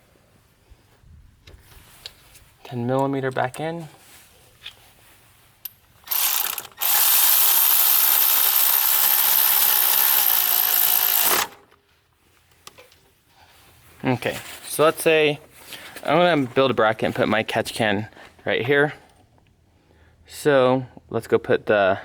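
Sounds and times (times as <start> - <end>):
ratchet driving a bolt: 5.7 - 11.7.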